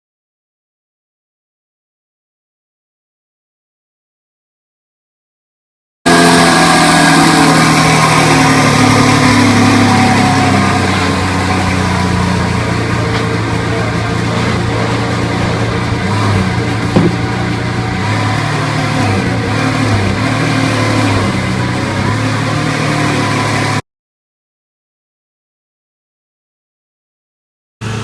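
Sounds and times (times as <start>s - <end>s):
car engine idling: 6.1s - 23.7s.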